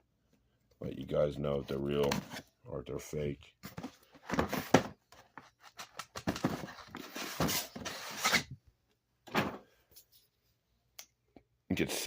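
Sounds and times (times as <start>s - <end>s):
packaging rustling and scraping: 3.7s - 8.5s.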